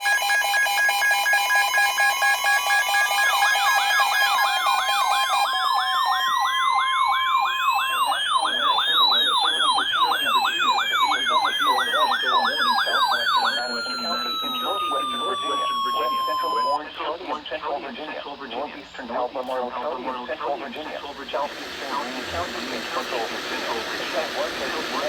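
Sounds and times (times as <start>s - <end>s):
slow wailing siren: 0.0s - 16.8s
fast yelp siren: 0.0s - 16.9s, 20.1s - 25.0s
pulsed beeping tones: 0.0s - 17.2s, 19.8s - 25.0s.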